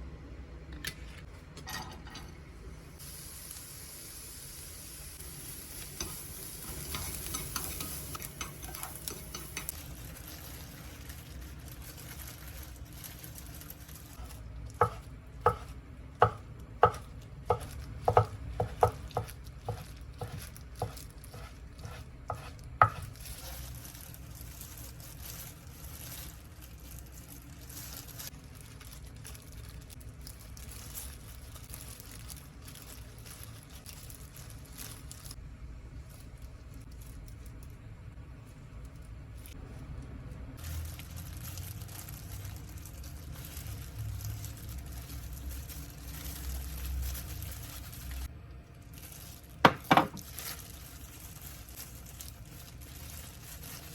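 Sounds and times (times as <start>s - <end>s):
faint sizzle: 1.7s - 53.9s
utensil stirring food in pan: 5.0s - 28.4s.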